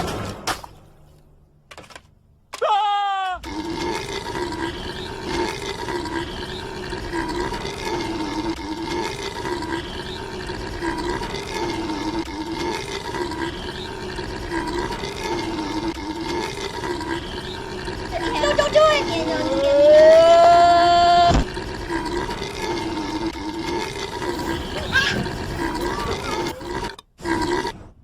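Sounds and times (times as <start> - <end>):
long rasping belch: 3.4 - 18.6, 21.4 - 27.8.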